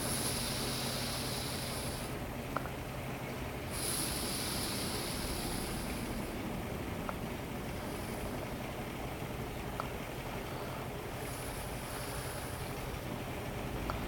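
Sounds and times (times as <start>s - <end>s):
hissing: 3.7s - 6.4s.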